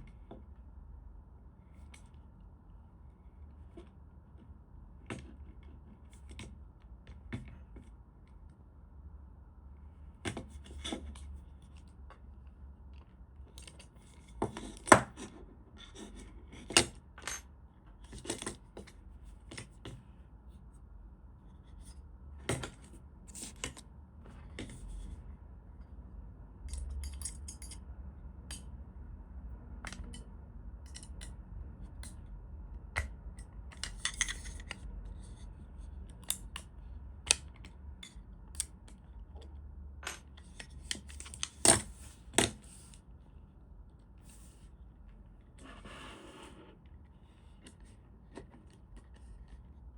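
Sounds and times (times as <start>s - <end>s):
steady low hum: 0.0s - 49.9s
plastic parts clicking and scraping: 33.7s - 36.7s.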